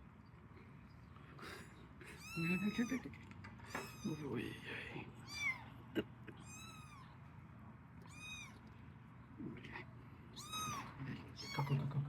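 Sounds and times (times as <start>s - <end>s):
kittens mewing: 2.0s - 4.3s, 5.2s - 7.2s, 8.0s - 8.6s, 10.4s - 11.8s.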